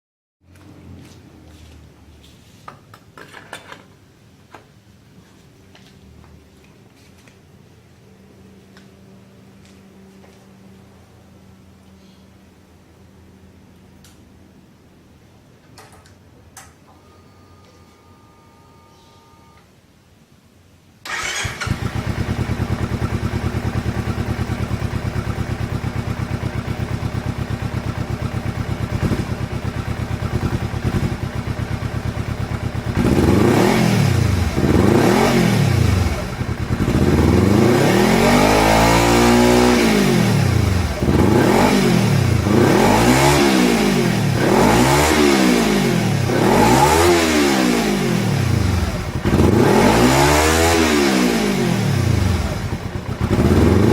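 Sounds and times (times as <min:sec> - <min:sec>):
motorcycle engine idling and revving: 0:21.1 - 0:53.9.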